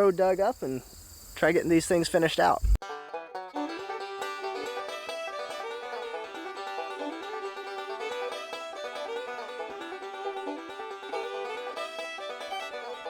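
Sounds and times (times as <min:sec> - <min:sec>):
plucked string music with beat: 0:02.8 - 0:13.0.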